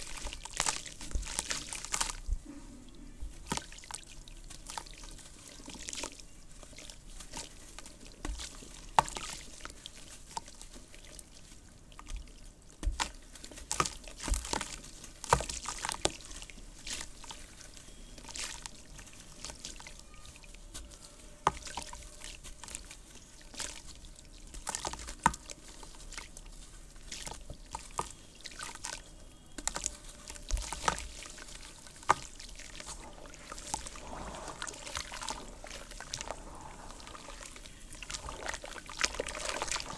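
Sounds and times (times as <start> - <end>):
water trickling: 21.0 - 39.9
dirt crumbling and falling: 29.5 - 39.9
soft crunches and clicks: 29.6 - 39.9.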